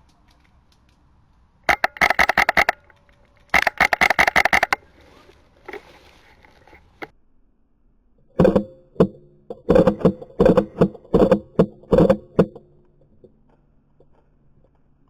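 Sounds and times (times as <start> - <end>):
metallic ringing of gun: 1.7 - 2.9, 3.6 - 4.8
airsoft rifle shots: 1.7 - 4.9.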